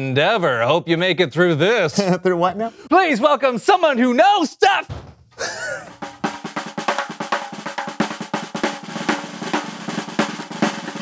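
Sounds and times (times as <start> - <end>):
snare drum roll: 5.9 - 11.0.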